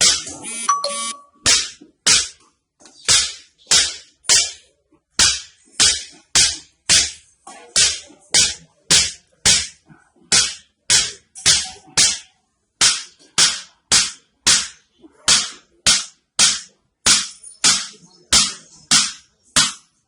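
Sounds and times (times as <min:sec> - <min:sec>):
sharp slaps on a back: 0:01.5 - 0:02.4, 0:03.1 - 0:04.6, 0:05.2 - 0:07.2, 0:07.8 - 0:12.2, 0:12.8 - 0:19.8.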